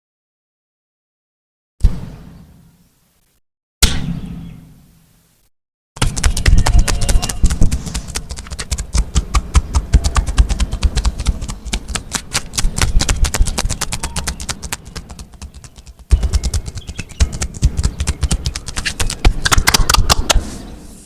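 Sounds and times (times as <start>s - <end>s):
low thumps: 6.0s - 19.6s
massage slaps and clicks: 6.0s - 20.4s.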